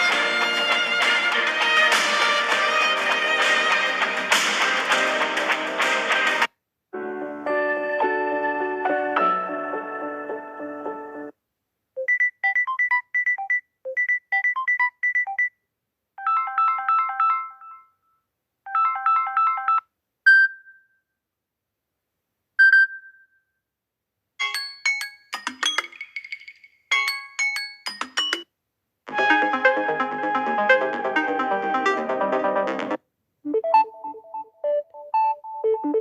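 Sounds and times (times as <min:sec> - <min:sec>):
chiming chord ringtone: 0:24.4 - 0:28.4
beeping electronic ringtone: 0:33.5 - 0:36.0
busy tone pattern: 0:33.5 - 0:36.0.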